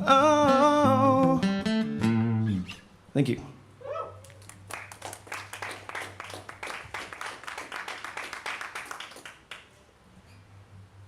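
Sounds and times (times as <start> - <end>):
audience clapping: 4.3 - 9.8.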